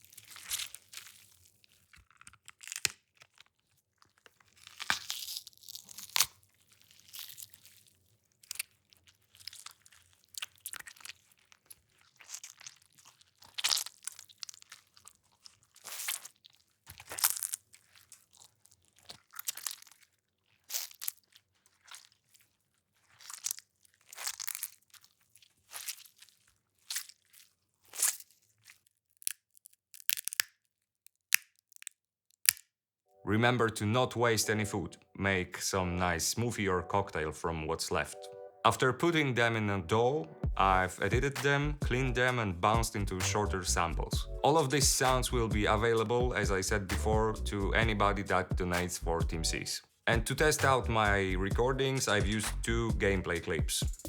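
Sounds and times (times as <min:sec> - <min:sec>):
wet crunches and squelches: 0:00.0 - 0:32.7.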